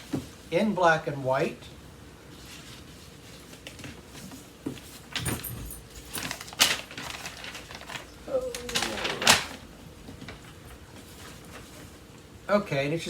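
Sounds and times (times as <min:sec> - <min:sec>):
paper rustling and crackling: 0:02.4 - 0:12.0.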